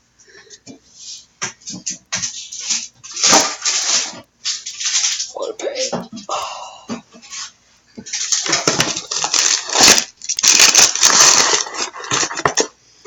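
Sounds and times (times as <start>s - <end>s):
foil wrapper tearing and crinkling: 2.5s - 5.4s, 8.1s - 12.7s.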